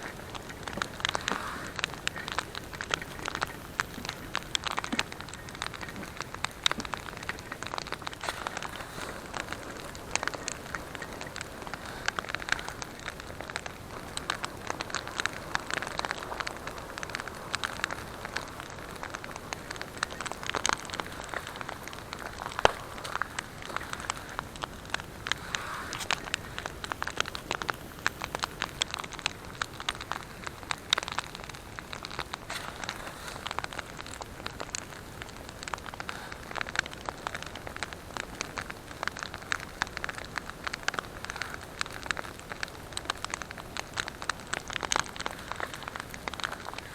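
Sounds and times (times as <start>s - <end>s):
campfire crackling and popping: 0.0s - 46.9s
hiss of burning: 0.0s - 46.9s.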